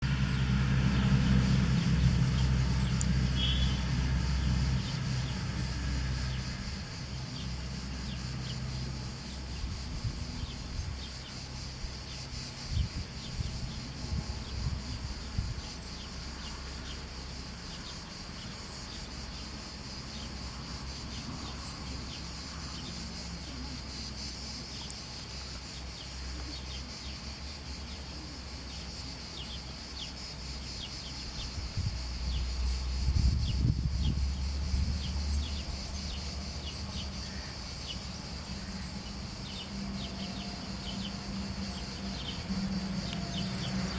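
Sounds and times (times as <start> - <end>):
low motor hum: 0.0 - 15.9, 31.8 - 43.9
insects chirring: 0.0 - 43.9
bird chirps: 3.4 - 3.8.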